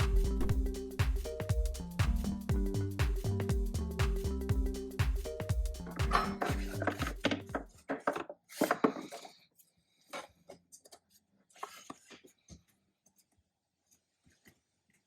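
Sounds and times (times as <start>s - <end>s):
background music with steady beat: 0.0s - 7.7s.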